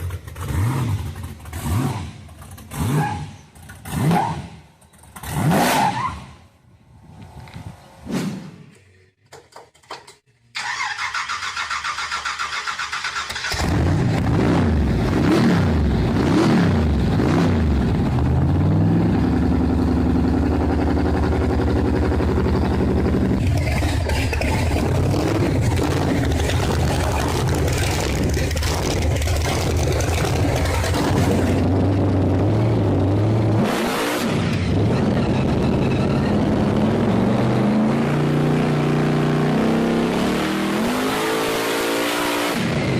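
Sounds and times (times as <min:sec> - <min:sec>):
car engine revving and running: 0:00.0 - 0:08.5, 0:12.3 - 0:42.9
engine starter cranking: 0:09.2 - 0:14.0, 0:23.4 - 0:31.6.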